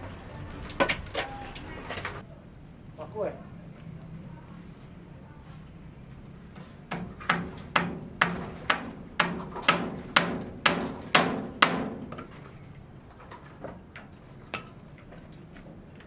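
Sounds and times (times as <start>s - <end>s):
hammer blows ringing: 6.9s - 12.4s.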